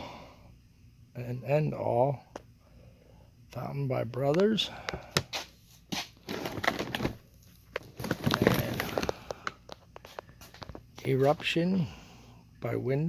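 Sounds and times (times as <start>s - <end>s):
cardboard and plastic wrap crinkling: 6.1s - 11.4s.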